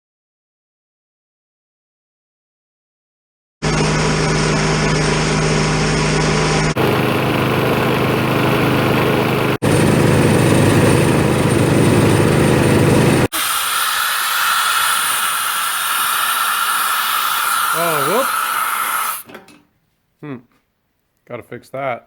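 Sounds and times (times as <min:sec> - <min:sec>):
air compressor engine running: 0:03.6 - 0:19.3.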